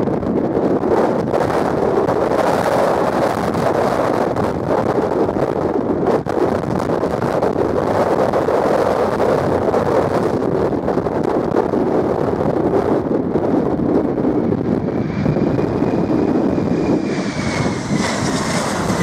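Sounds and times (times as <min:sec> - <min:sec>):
gusty wind buffeting microphone: 0:00.0 - 0:19.0.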